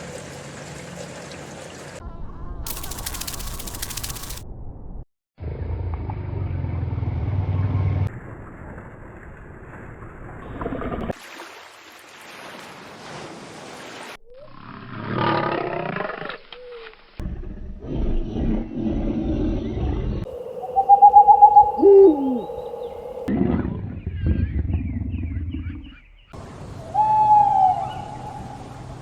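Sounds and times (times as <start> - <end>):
deep roar-like animal call: 17.2 - 23.8
wavering pitched animal call: 20.3 - 23.3.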